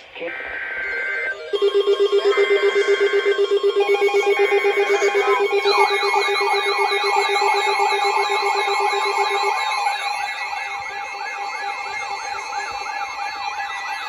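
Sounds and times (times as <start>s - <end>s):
siren-like warble: 0.4s - 14.0s
fast low beeping: 0.8s - 9.8s.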